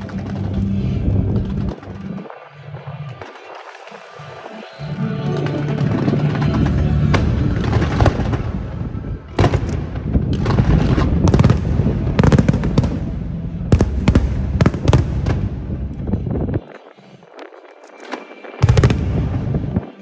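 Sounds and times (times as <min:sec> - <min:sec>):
fireworks bangs: 0:09.4 - 0:16.4, 0:18.6 - 0:20.0
low rumble of echoing reports: 0:11.2 - 0:16.6.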